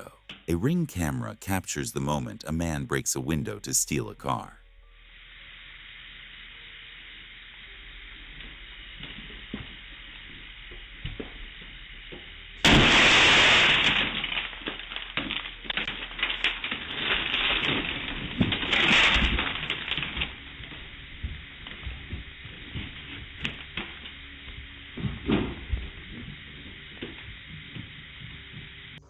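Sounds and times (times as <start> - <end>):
car window smashing: 12.6 - 20.2.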